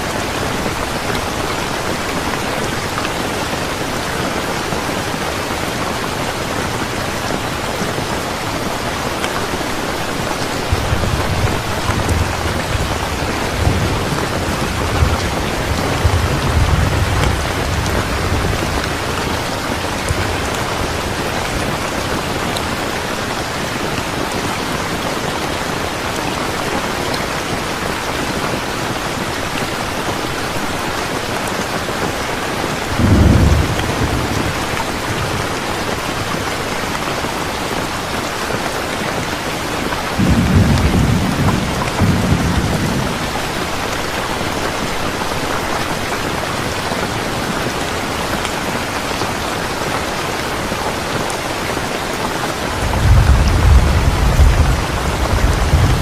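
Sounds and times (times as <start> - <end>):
heavy rain: 0.0 - 56.0
thunder rumbling: 10.1 - 22.8, 32.9 - 35.6, 40.2 - 44.5, 52.7 - 56.0.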